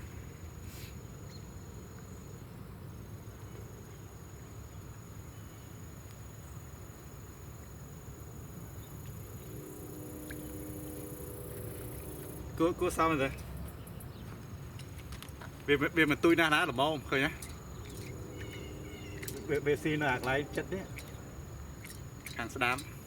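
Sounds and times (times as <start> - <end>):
low rumbling background noise: 0.0 - 23.0
low steady tones: 7.8 - 14.2, 15.8 - 23.0
high-pitched steady tone: 9.2 - 12.8.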